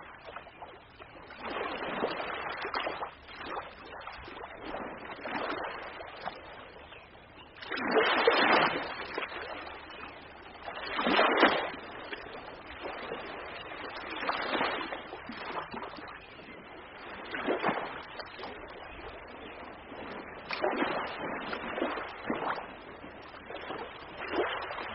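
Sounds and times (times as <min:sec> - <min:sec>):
ocean waves breaking: 0:07.6 - 0:24.9.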